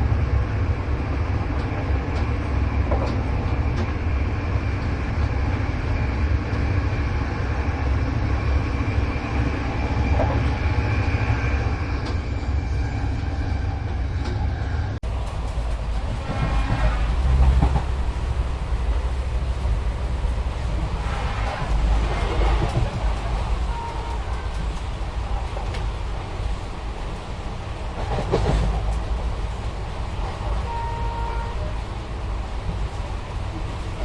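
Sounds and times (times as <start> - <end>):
train rumbling on rails: 0.0 - 34.0.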